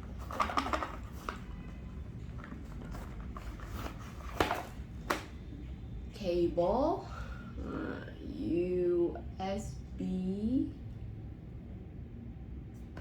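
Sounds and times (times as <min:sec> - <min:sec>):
packaging rustling: 0:00.0 - 0:05.1.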